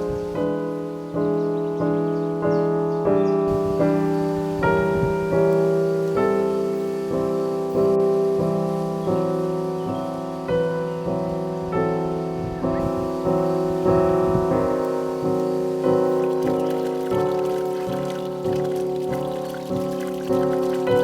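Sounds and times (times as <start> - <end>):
slow piano piece: 0.0 - 21.0.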